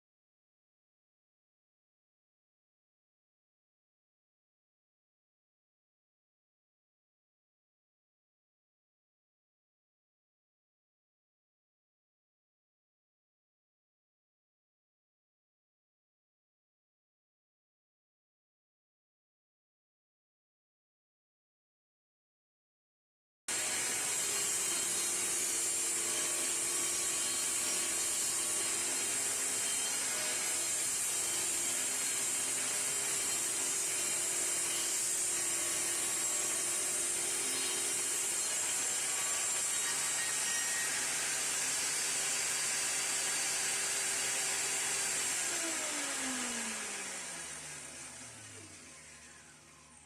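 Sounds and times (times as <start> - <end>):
electric power tool running: 23.5 - 50.0.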